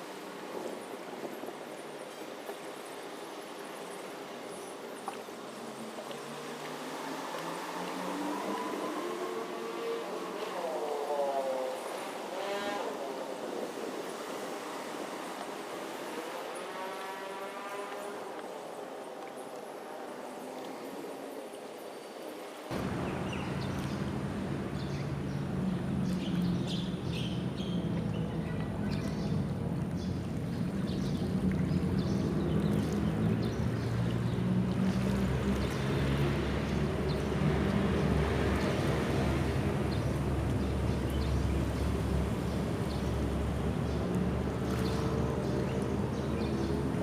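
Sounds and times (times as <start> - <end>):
engine low steady drone: 22.7 - 47.0.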